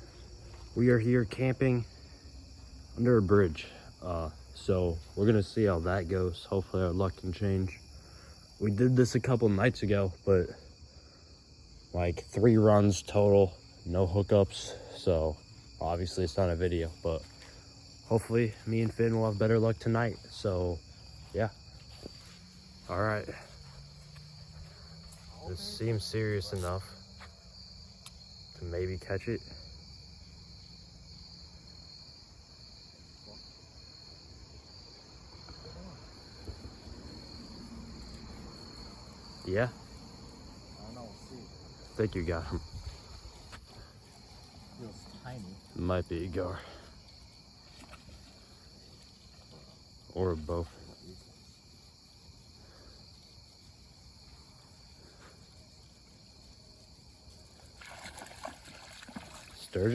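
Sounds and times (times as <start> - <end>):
crickets and night insects trilling: 0.0 - 59.9
water splashing and sloshing: 57.3 - 59.9.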